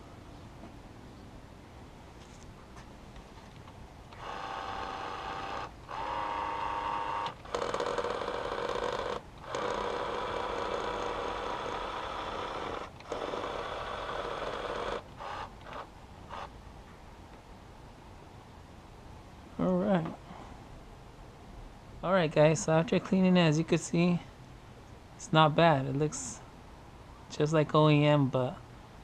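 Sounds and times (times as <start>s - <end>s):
small electric motor whirring: 4.1s - 16.5s.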